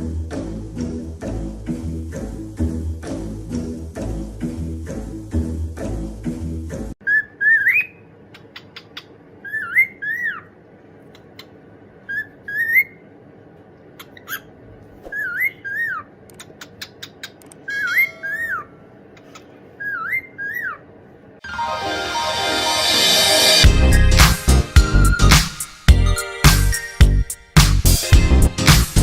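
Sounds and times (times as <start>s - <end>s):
pet bird whistling: 7.0s - 10.5s, 12.1s - 13.0s.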